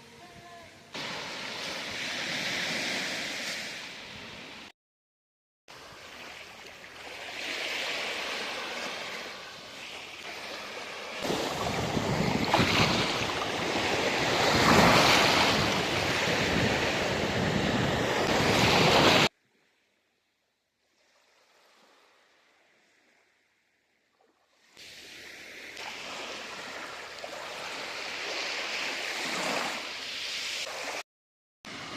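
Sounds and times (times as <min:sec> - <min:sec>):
sea waves breaking: 0:00.2 - 0:04.7, 0:05.7 - 0:19.3, 0:24.8 - 0:31.0
wind noise on microphone: 0:11.2 - 0:19.3.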